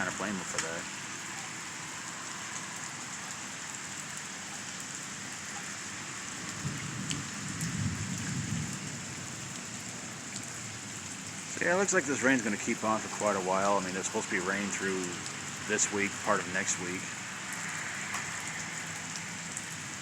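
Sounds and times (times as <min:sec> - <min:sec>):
heavy rain pattering: 0:00.0 - 0:20.0
low rumble of thunder: 0:06.5 - 0:09.6.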